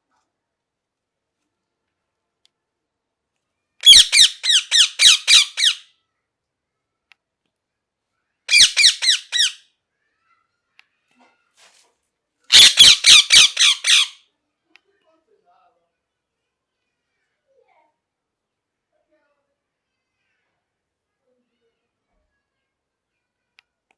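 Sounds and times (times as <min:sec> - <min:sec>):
parakeet screeching: 0:03.8 - 0:05.8, 0:08.5 - 0:09.6, 0:12.5 - 0:14.2.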